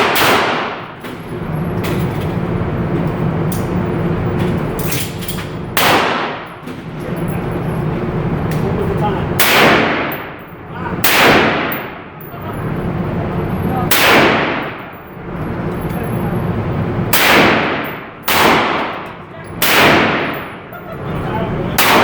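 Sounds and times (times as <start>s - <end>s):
gunshots with echo: 0.0s - 1.0s, 5.8s - 6.6s, 9.4s - 10.4s, 11.0s - 12.1s, 13.9s - 14.9s, 17.1s - 20.6s, 21.8s - 22.0s.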